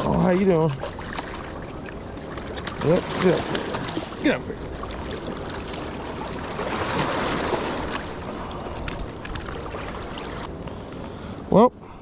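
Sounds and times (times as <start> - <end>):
river water rushing: 0.9 - 10.5.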